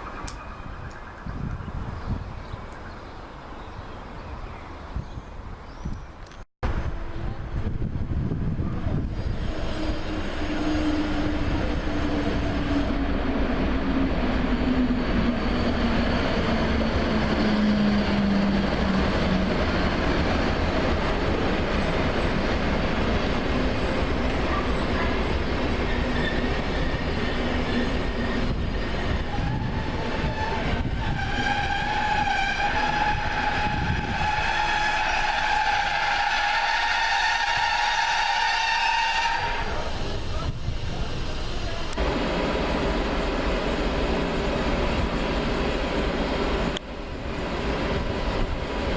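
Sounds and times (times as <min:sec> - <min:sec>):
train wheels rumbling on rails: 0:06.7 - 0:48.9.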